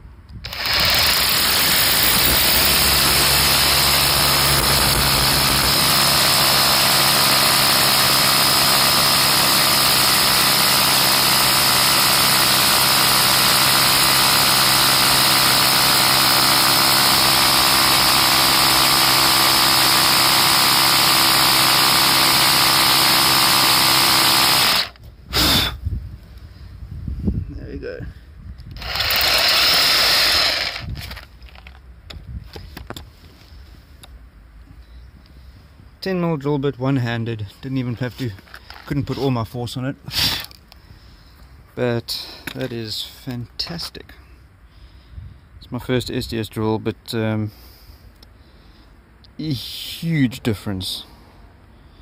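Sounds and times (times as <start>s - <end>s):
rotary hammer drilling into stone: 0.4s - 25.7s, 28.8s - 31.2s.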